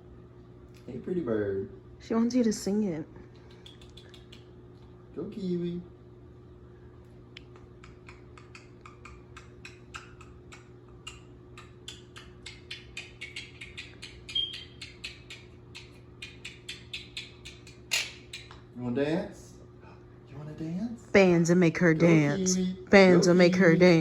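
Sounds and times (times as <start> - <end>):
parrot making sharp clicks: 3.5 - 4.5, 7.4 - 18.7
parrot high chirp: 11.0 - 18.6.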